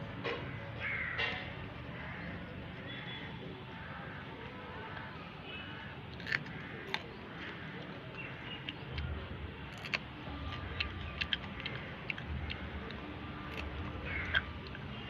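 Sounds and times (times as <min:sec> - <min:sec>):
person chewing crunchy chilies: 0:04.9 - 0:15.0.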